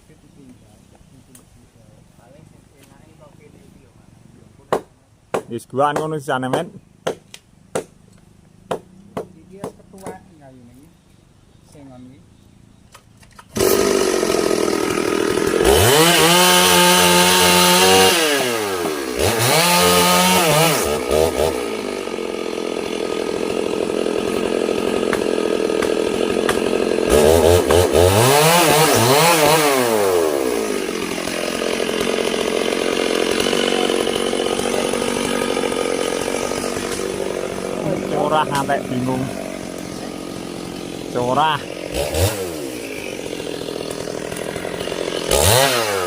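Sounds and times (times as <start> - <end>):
chainsaw revving: 13.4 - 46.0.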